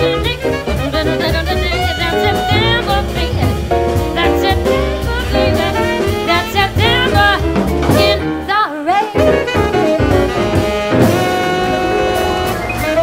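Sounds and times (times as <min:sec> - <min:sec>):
bending lead melody: 0:00.0 - 0:13.0
jazz band playing swing: 0:00.0 - 0:13.0.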